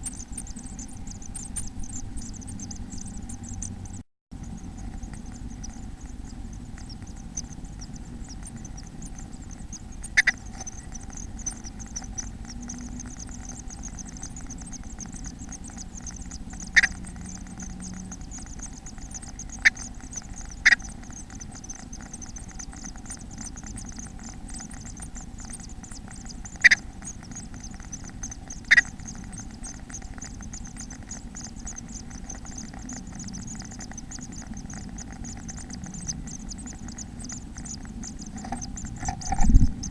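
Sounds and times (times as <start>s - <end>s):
microphone hum and hiss: 22.6s - 39.9s.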